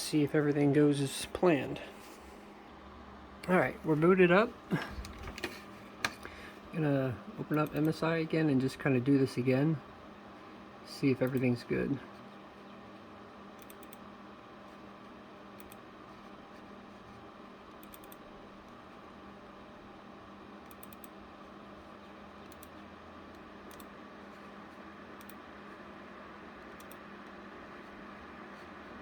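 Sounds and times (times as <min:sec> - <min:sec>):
computer fans humming: 0:00.0 - 0:29.0
light computer clicks: 0:07.5 - 0:08.0, 0:11.2 - 0:11.5, 0:13.6 - 0:14.0, 0:15.6 - 0:15.8, 0:17.8 - 0:18.2, 0:20.6 - 0:21.2, 0:22.4 - 0:22.8, 0:23.7 - 0:23.9, 0:25.2 - 0:25.4, 0:26.7 - 0:27.4.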